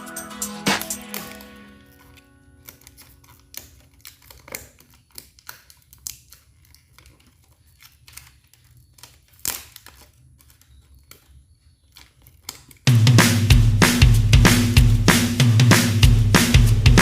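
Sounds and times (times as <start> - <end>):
hands handling phone and packaging: 0.8 - 12.9.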